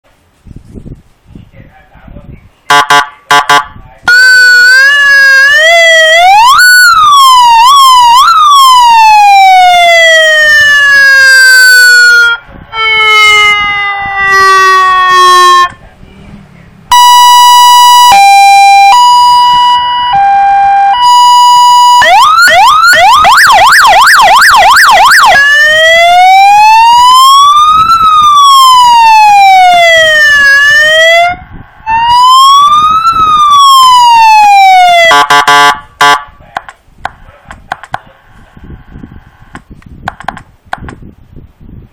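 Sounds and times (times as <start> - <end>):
electronic siren cycling tones: 2.7 - 15.8, 16.9 - 36.2.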